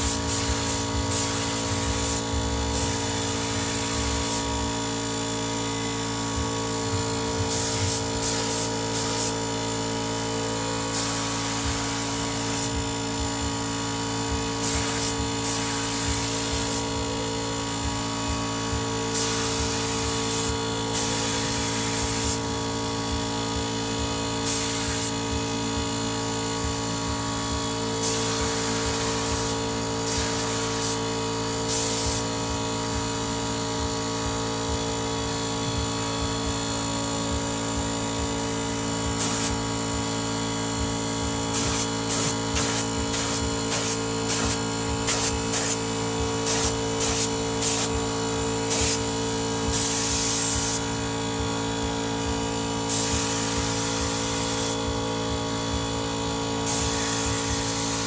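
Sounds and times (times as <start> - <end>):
air hissing bursts: 0.0 - 4.7, 6.9 - 9.7, 10.9 - 12.9, 14.5 - 17.6, 19.1 - 22.5, 24.4 - 25.3, 28.0 - 32.6, 39.2 - 39.6, 41.5 - 51.1, 52.8 - 55.2, 56.6 - 58.0
air compressor motor hum: 0.0 - 58.0.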